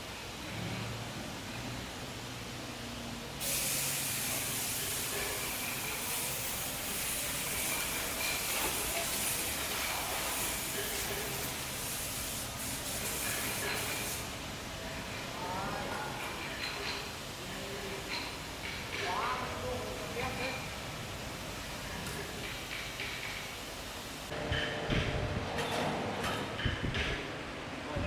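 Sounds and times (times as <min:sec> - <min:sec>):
spraying hiss: 0:03.4 - 0:14.4.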